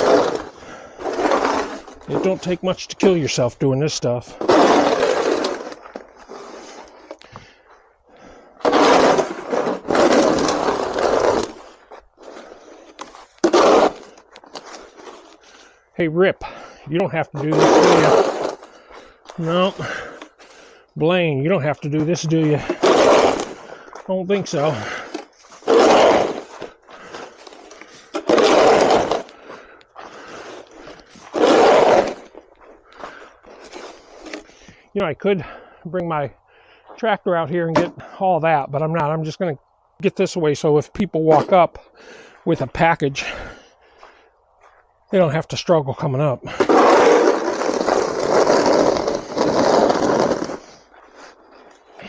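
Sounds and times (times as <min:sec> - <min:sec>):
snow shovel scraping pavement: 0:00.0 - 0:34.8, 0:41.3 - 0:44.2, 0:45.3 - 0:52.0.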